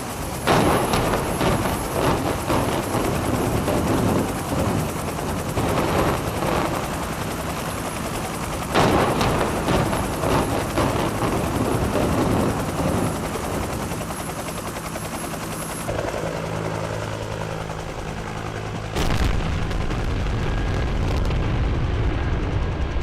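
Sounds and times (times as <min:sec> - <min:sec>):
helicopter drone: 0:00.0 - 0:23.0
rattling crackle of gunfire: 0:00.5 - 0:06.9, 0:08.7 - 0:14.0
loud boom: 0:19.0 - 0:22.2.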